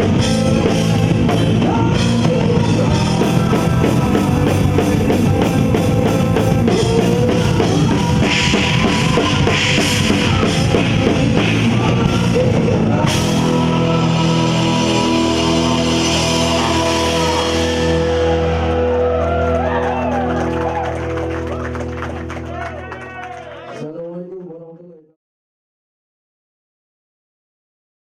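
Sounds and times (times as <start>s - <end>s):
drum kit fast beat: 0.0s - 18.5s
live rock music: 0.0s - 24.4s.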